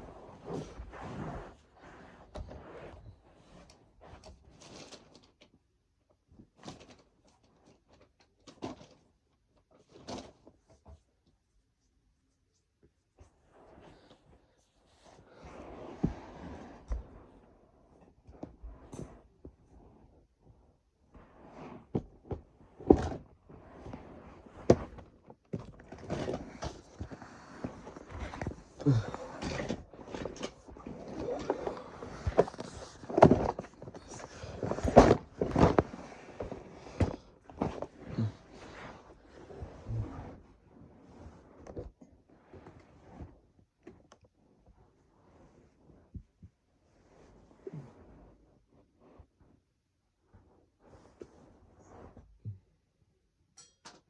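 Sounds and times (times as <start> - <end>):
rustling in drawers: 21.4 - 40.3
knocks and thuds of rummaging: 22.0 - 23.3, 24.6 - 38.1.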